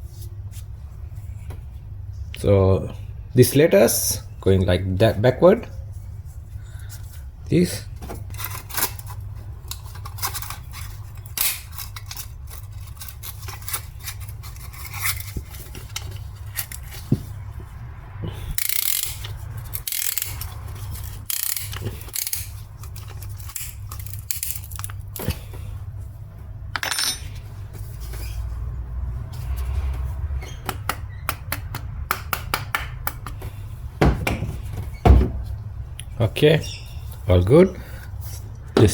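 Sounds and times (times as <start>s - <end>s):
steady low hum: 0.0s - 30.4s
metal tools clinking and scraping: 8.3s - 17.1s, 18.5s - 25.4s, 26.7s - 27.5s.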